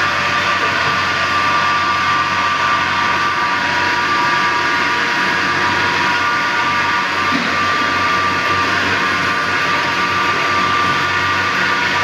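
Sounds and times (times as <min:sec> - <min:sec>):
steam boiler hissing: 0:06.2 - 0:10.8.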